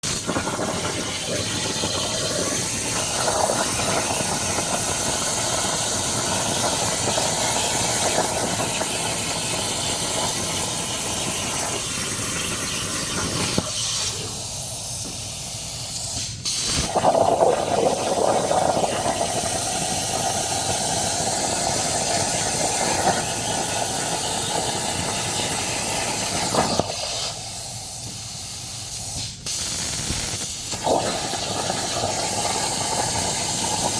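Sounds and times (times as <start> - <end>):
plasma cutter arc hissing: 0.0 - 17.0, 18.9 - 33.9.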